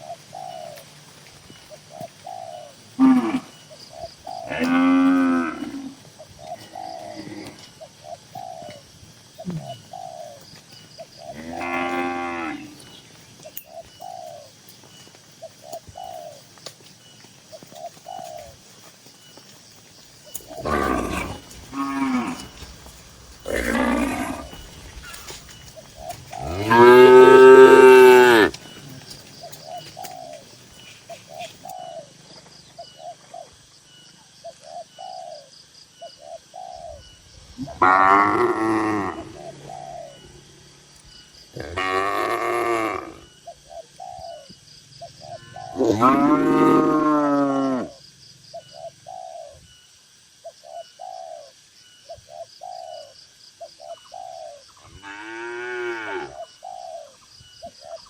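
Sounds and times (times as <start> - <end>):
cattle mooing: 20.6 - 22.6, 26.4 - 28.6, 37.8 - 39.4, 41.6 - 43.2, 45.8 - 47.9.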